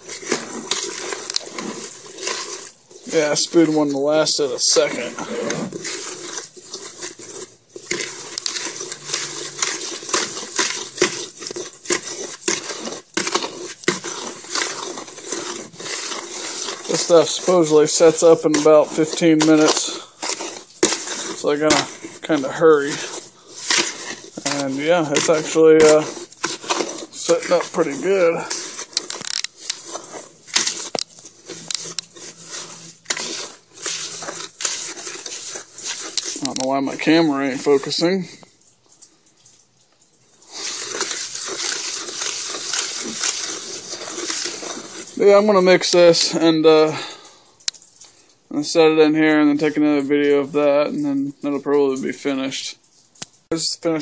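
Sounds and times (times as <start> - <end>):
gritty scraping of concrete mix: 0.0 - 38.6, 40.4 - 48.0, 48.6 - 54.0.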